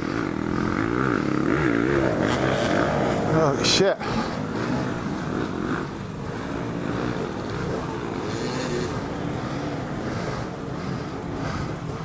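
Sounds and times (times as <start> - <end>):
dirt bike engines revving: 0.0 - 12.0.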